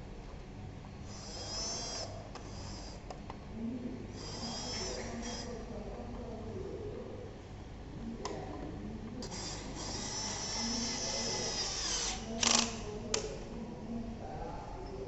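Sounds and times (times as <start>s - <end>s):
small motor whirring: 1.0s - 3.0s, 4.1s - 5.7s, 9.2s - 12.8s.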